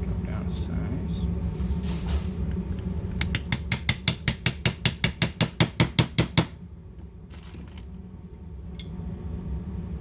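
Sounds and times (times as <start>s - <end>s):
hammer tapping a pin punch: 3.2s - 6.6s.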